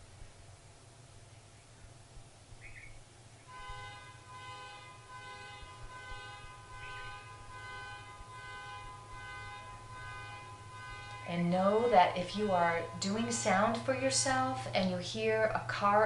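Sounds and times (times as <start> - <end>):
faint bird chirp: 1.2 - 3.8
tuning fork ringing: 3.5 - 14.9.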